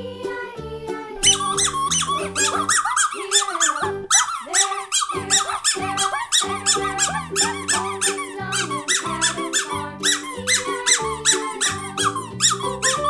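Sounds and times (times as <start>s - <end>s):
high squeaky chirps: 1.2s - 13.0s.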